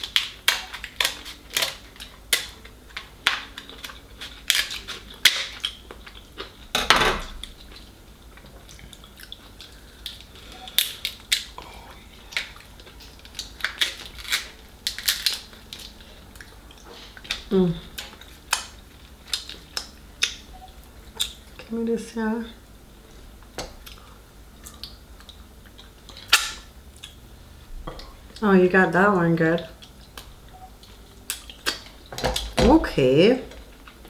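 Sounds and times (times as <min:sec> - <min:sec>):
crab shells cracking: 0:00.0 - 0:06.6, 0:09.0 - 0:11.6, 0:12.2 - 0:16.6, 0:17.3 - 0:20.5.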